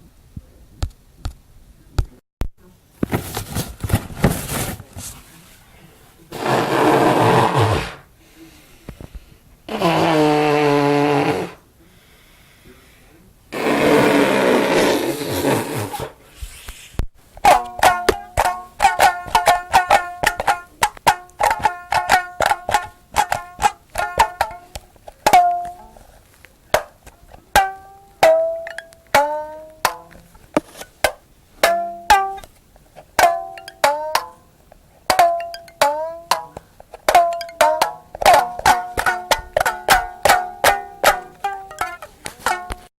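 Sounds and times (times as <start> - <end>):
twangy plucked-string notes: 17.4 - 26.0, 26.7 - 34.5, 35.1 - 42.9.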